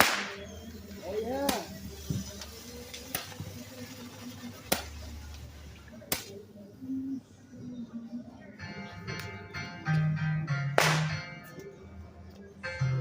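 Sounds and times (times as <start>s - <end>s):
firework bangs: 0.0s - 6.4s, 10.8s - 11.2s
murmur of voices: 0.0s - 13.0s.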